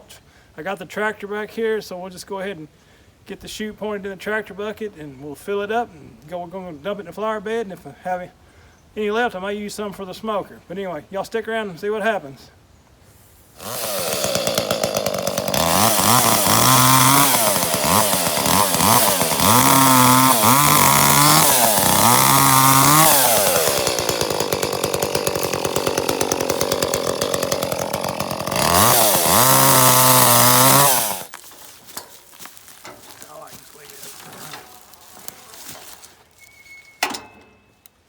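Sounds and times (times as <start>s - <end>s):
wood chipper running: 13.6s - 36.0s.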